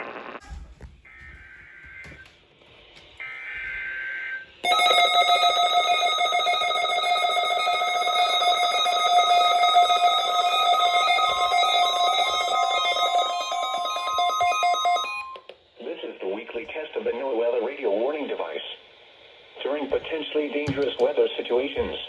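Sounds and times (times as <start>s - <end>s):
harsh steady attention tone: 3.2s - 15.4s.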